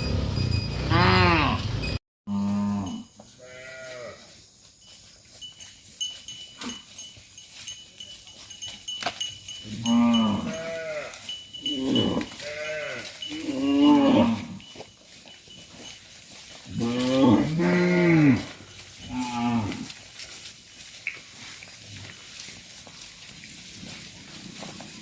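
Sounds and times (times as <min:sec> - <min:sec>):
cattle mooing: 0:00.9 - 0:04.2, 0:09.7 - 0:14.6, 0:16.7 - 0:18.5, 0:19.1 - 0:19.9.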